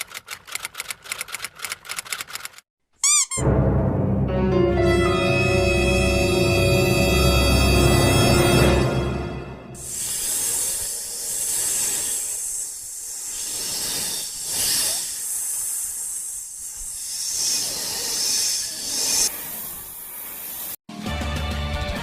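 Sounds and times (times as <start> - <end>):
hissing steam or air: 9.8 - 20.8.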